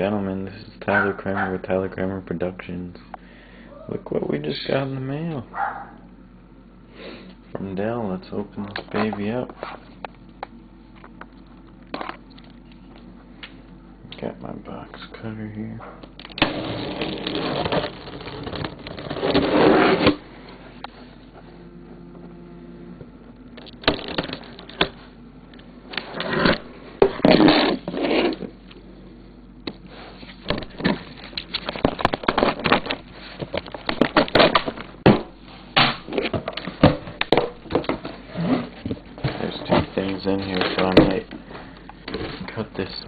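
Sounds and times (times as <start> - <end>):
box cutter slicing through tape: 19.0 - 20.2.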